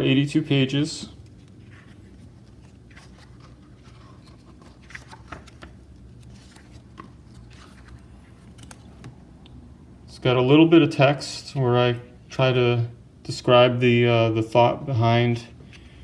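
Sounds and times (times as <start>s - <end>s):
low room hum: 0.0s - 16.0s
book pages rustling: 1.1s - 9.2s.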